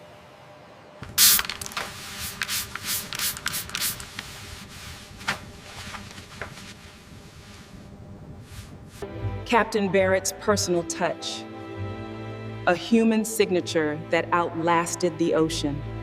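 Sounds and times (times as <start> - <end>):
hissing rubbing strokes: 1.2 - 5.2.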